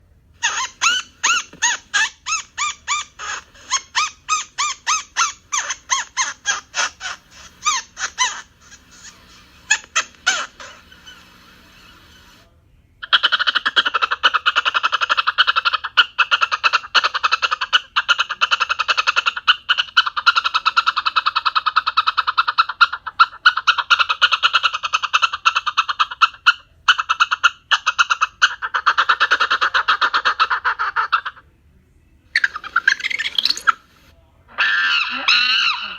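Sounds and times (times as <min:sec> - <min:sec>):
cartoon monkey chattering: 0:00.4 - 0:12.3, 0:13.0 - 0:31.4, 0:32.4 - 0:33.9, 0:34.5 - 0:35.9
monkey gliding call: 0:00.4 - 0:12.4, 0:32.4 - 0:35.9.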